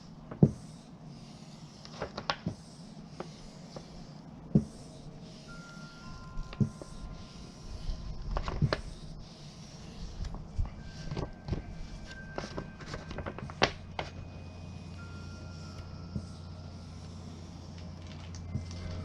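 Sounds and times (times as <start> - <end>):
squeegee rubbing on vinyl: 0.5 - 13.7.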